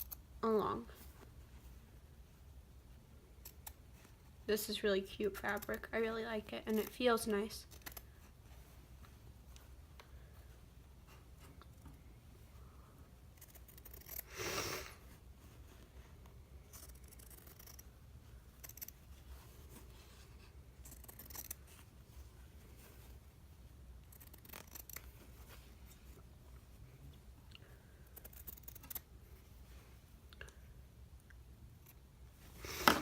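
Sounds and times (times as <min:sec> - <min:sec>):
scissors snipping cloth: 0:20.8 - 0:21.6, 0:24.0 - 0:25.2.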